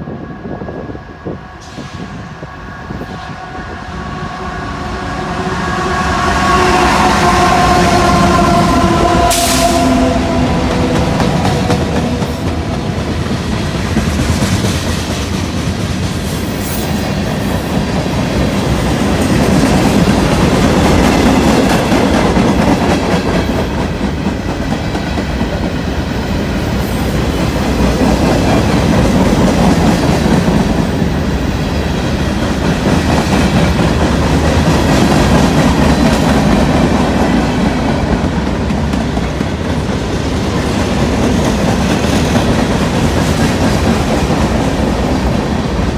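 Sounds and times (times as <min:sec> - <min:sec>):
freight train wheels clacking: 0:05.0 - 0:45.9.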